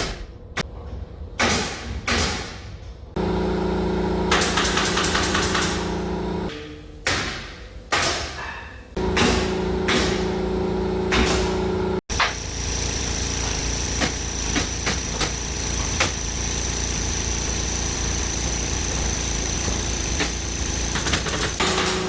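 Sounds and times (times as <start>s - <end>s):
machine hum: 3.2s - 7.1s, 9.0s - 22.0s.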